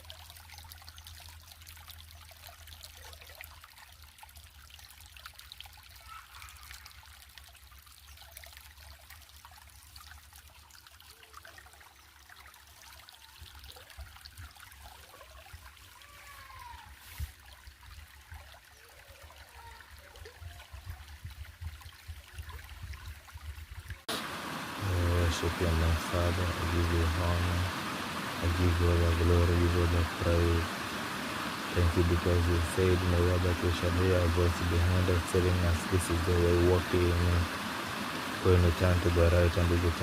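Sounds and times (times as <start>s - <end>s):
water trickling: 0.0s - 40.0s
faint rising and falling calls: 24.1s - 40.0s.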